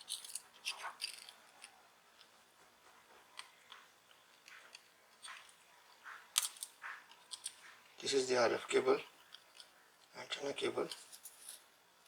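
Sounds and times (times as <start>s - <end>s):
small parts clicking and scraping: 0.0s - 2.4s, 3.3s - 8.0s, 9.0s - 10.2s, 10.8s - 11.7s.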